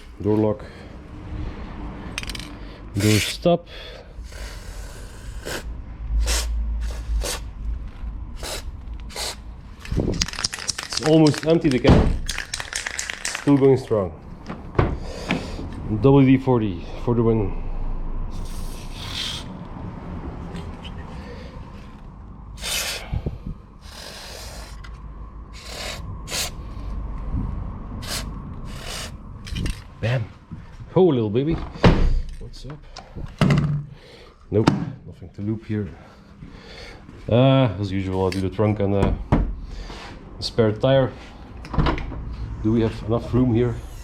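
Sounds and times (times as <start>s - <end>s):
aerosol can spraying: 8.4s - 9.4s, 28.0s - 29.2s.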